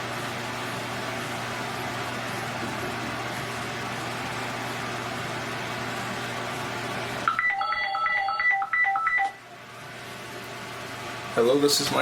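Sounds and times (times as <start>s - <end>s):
background hum and hiss: 0.0s - 12.0s
telephone keypad touch-tones: 7.3s - 9.4s.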